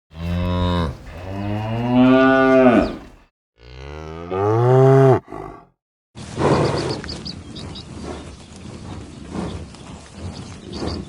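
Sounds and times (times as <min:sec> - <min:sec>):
cow mooing: 0:00.1 - 0:05.7.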